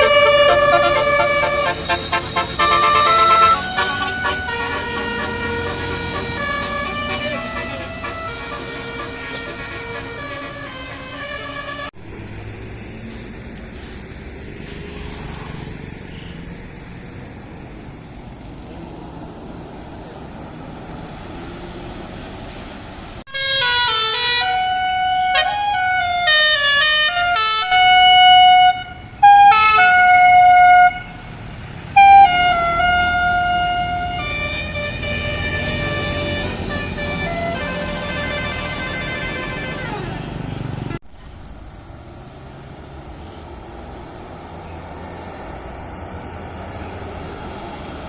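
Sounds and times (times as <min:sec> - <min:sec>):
multi-note bus horn tune: 0:00.0 - 0:12.0, 0:23.3 - 0:31.3, 0:31.9 - 0:41.5
traffic noise: 0:00.0 - 0:48.0.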